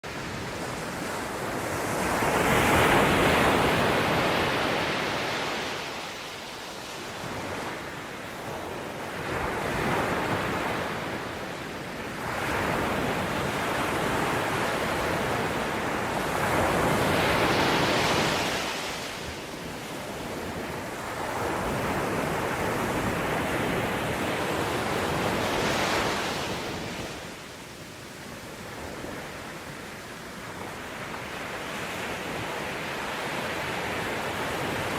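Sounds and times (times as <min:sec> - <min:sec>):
wind on microphone: 0:00.0 - 0:34.9
ocean waves breaking: 0:00.1 - 0:34.9.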